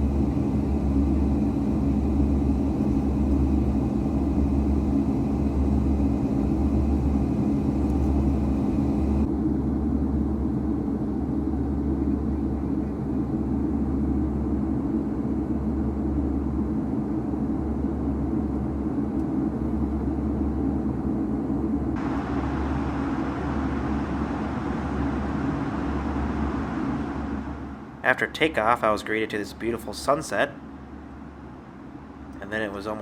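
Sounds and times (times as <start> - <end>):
jet engine rumble: 0.0 - 33.0
high hiss: 22.0 - 28.1.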